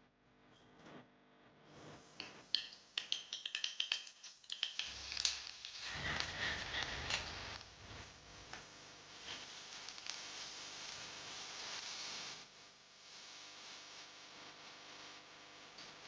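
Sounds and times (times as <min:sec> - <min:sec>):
sharp kitchen clicks and taps: 0:02.2 - 0:05.8
rustling hiss: 0:04.8 - 0:12.4.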